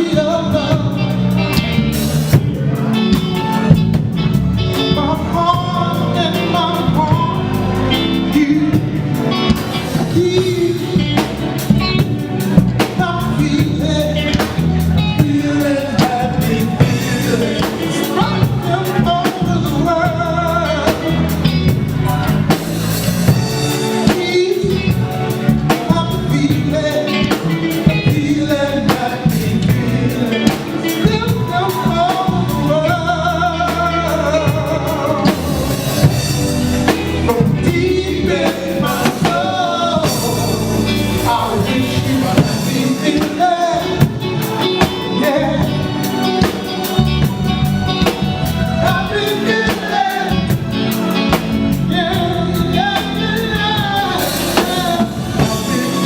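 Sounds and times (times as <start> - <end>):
live band playing: 0.0 - 56.0.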